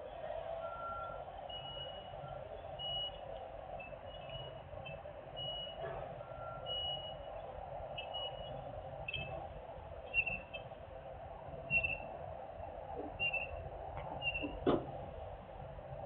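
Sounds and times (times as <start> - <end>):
vehicle backup alarms beeping: 0.4 - 9.4, 10.0 - 10.8, 11.7 - 12.1, 13.0 - 14.9.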